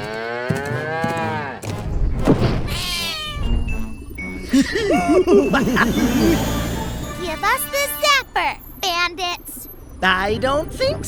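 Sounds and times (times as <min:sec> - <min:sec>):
cartoon animal calls: 0:02.7 - 0:03.6
background music: 0:03.6 - 0:08.8.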